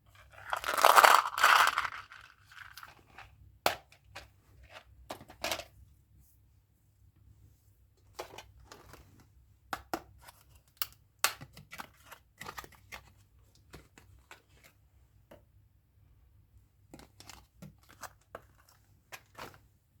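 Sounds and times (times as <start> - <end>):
packaging crinkling and tearing: 0.4 - 2.8.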